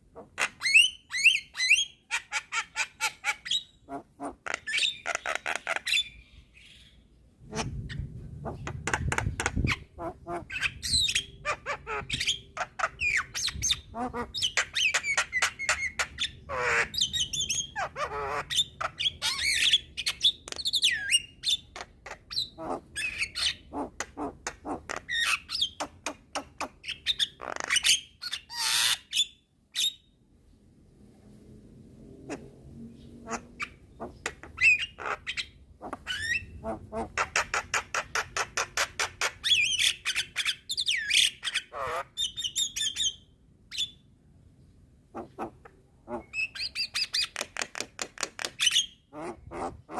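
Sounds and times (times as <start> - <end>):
bird singing with clicks and squawks: 0.0 - 30.2, 32.3 - 44.1, 45.1 - 49.9.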